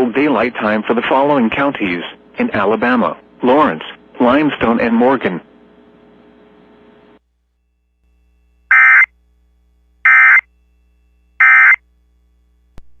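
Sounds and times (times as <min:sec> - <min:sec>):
digital data tone bursts: 0:08.7 - 0:09.1, 0:10.1 - 0:10.4, 0:11.4 - 0:11.8.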